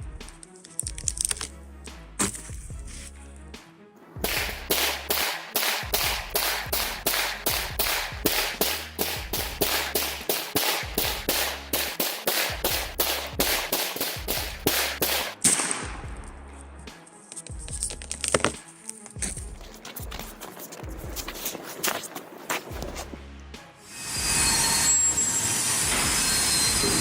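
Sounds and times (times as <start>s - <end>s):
background music bass line: 0.0s - 21.5s, 22.7s - 23.9s
shotgun rapid fire: 4.2s - 16.1s.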